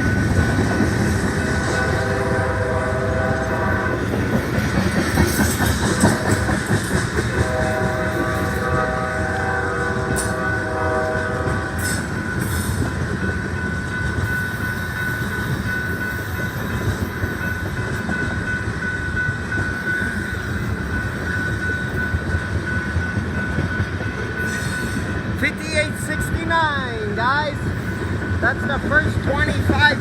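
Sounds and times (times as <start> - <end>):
train wheels rumbling on rails: 0.0 - 30.0
locomotive air horn chord: 1.6 - 4.0, 7.4 - 11.9.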